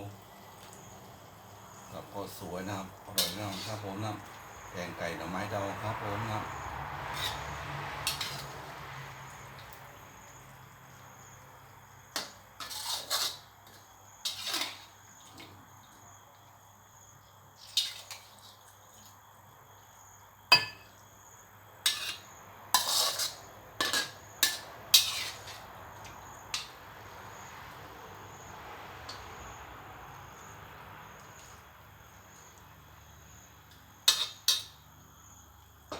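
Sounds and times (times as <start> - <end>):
metal spoon scraping a dish: 3.1 - 4.3, 7.1 - 8.7, 12.2 - 13.5, 14.2 - 15.0, 21.8 - 25.7, 34.0 - 34.8.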